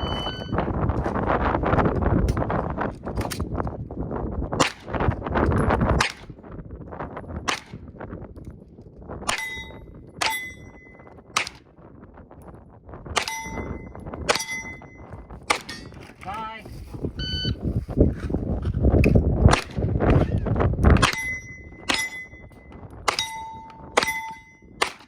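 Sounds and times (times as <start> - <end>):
pistol shots: 11.4 - 11.6, 23.1 - 25.0
steel targets clanging: 13.2 - 16.0, 21.0 - 24.7.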